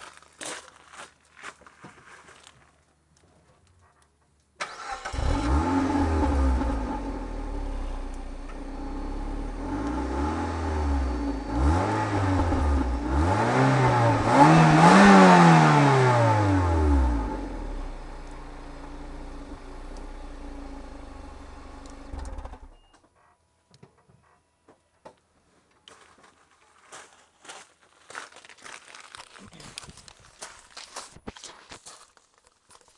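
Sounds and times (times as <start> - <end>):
engine revving: 4.6 - 22.8
car engine starting and idling: 4.6 - 23.0.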